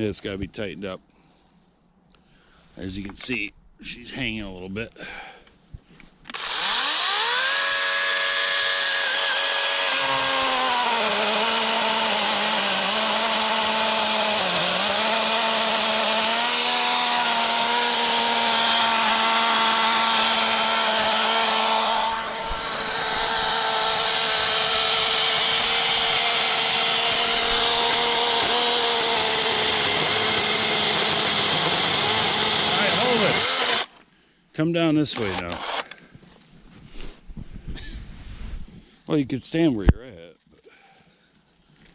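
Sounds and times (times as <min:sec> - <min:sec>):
electric chainsaw cutting wood: 0:06.3 - 0:34.0, 0:35.2 - 0:36.0.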